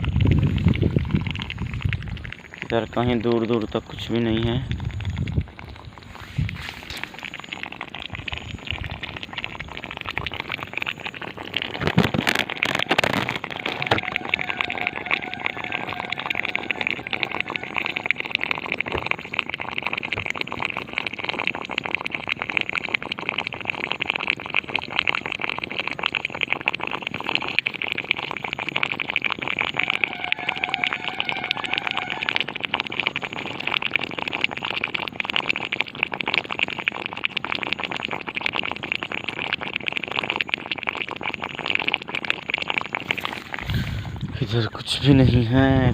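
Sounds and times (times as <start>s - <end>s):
loud burst of noise: 11.9s - 18.3s, 29.7s - 32.9s
rapidly pulsing high-pitched sound: 11.9s - 18.6s, 29.6s - 33.4s.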